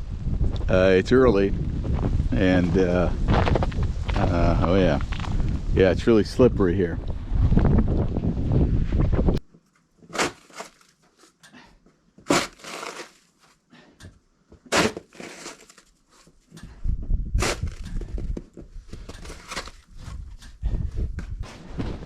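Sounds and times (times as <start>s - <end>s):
wind noise: 0.0s - 9.4s, 16.6s - 22.0s
crunching footsteps: 1.8s - 5.6s.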